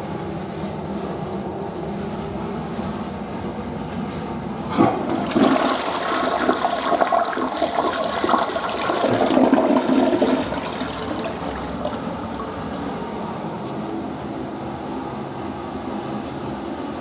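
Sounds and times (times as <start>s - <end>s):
toilet flushing: 4.6s - 14.4s.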